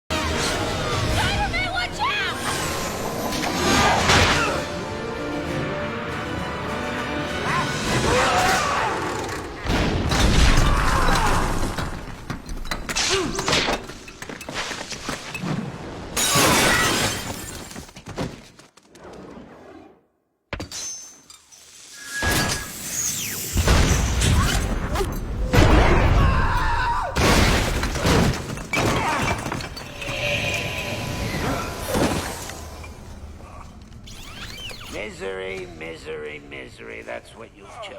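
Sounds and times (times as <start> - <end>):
crashing and crackling debris: 27.1 - 32.8.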